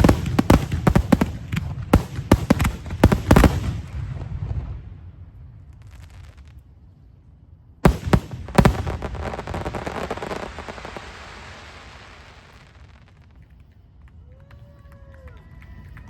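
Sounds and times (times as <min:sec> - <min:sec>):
firework bangs: 0:00.0 - 0:06.6, 0:07.8 - 0:13.7
firework crackling: 0:00.0 - 0:06.6, 0:07.8 - 0:14.3.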